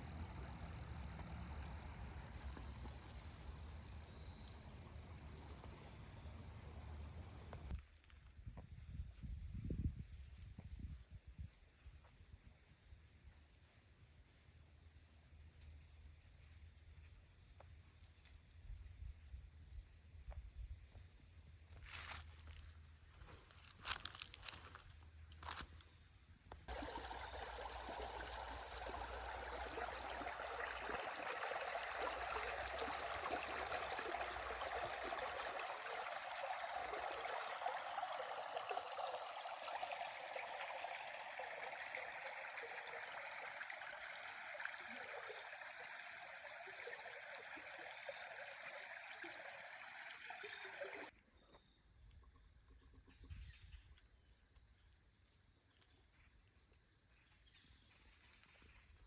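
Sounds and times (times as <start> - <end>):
running water trickling: 0.0 - 8.2, 26.6 - 51.1.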